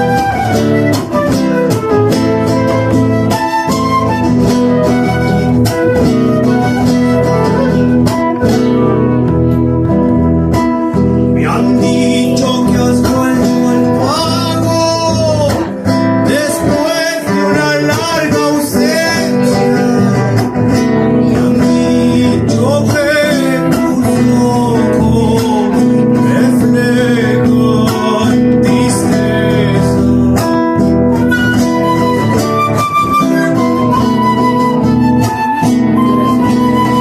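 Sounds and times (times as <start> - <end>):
acoustic guitars strumming: 0.0 - 37.0
flute melody: 0.0 - 37.0
man singing: 11.3 - 37.0.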